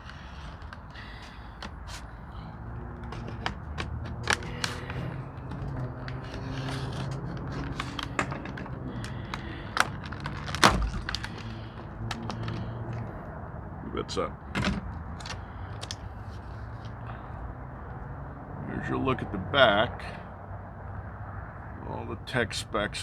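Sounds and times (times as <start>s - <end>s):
plastic and metal pieces clicking: 3.0s - 13.1s.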